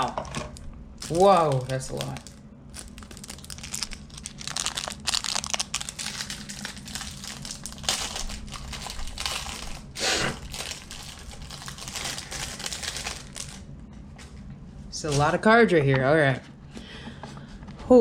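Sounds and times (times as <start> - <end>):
wrapper crinkling: 0.0 - 13.6.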